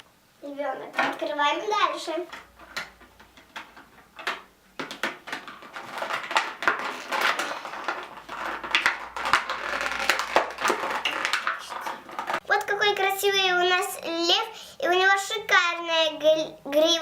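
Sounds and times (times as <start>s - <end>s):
packaging crinkling: 2.5s - 12.4s.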